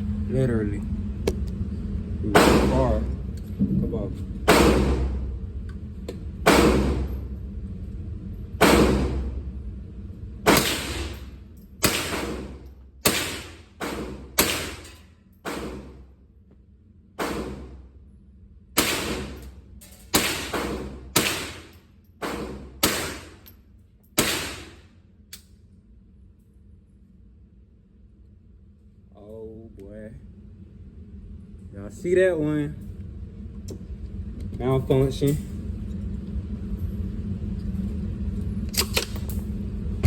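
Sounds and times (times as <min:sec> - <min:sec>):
gunshots: 0:02.3 - 0:03.0, 0:04.5 - 0:05.2, 0:06.4 - 0:07.1, 0:08.6 - 0:09.3, 0:10.5 - 0:11.2, 0:11.8 - 0:14.9, 0:15.5 - 0:16.0, 0:17.2 - 0:17.8, 0:18.8 - 0:19.4, 0:20.1 - 0:23.4, 0:24.2 - 0:24.8.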